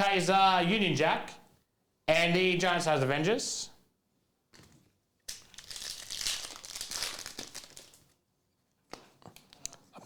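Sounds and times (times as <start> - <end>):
foil wrapper crinkling: 5.3 - 8.2.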